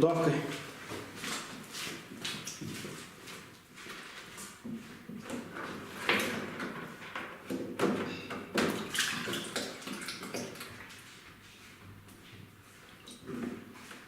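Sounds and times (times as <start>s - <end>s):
rustling and scraping: 0.5s - 7.3s.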